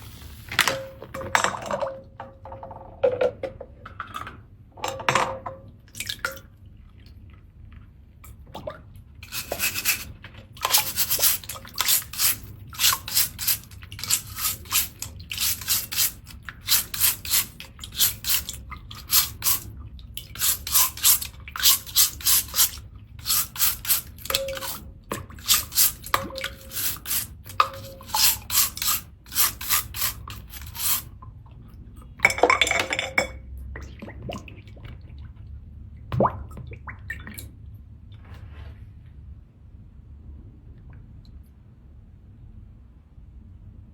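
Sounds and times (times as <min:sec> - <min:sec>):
seashell being scrubbed: 0:09.2 - 0:19.7, 0:20.3 - 0:31.1.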